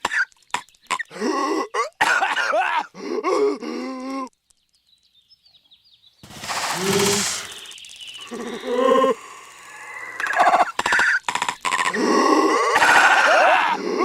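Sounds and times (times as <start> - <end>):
cartoon character coughing: 1.7 - 3.6
loud harsh burst: 6.2 - 10.8
strained groaning and hacking: 11.8 - 14.0.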